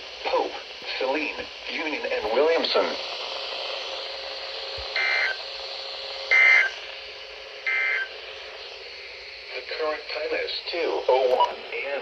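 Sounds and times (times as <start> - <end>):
radio hiss: 0.0 - 12.0
digital data bursts: 5.0 - 5.5, 6.3 - 6.8, 7.6 - 8.2.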